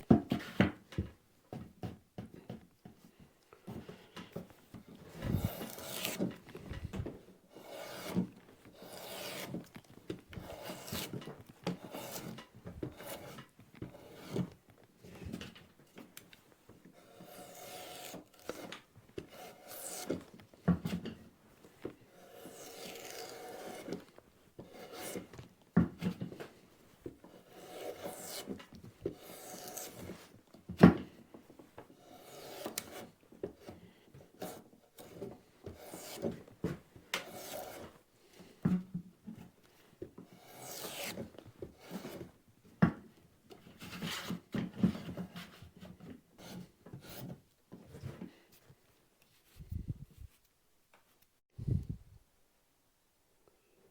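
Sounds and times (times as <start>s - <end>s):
drawknife scraping bark: 5.3s - 6.2s, 7.6s - 8.2s, 8.8s - 9.6s, 10.4s - 11.1s, 17.0s - 20.2s, 22.3s - 24.0s, 27.5s - 28.5s, 29.2s - 30.2s, 32.2s - 33.0s, 35.8s - 36.4s, 37.2s - 37.8s, 40.4s - 41.3s.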